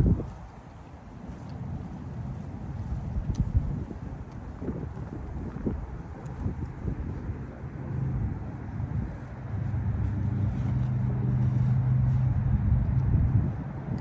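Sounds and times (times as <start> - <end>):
motor vehicle engine hum: 0.0 - 14.0
wind rumbling on microphone: 0.0 - 14.0.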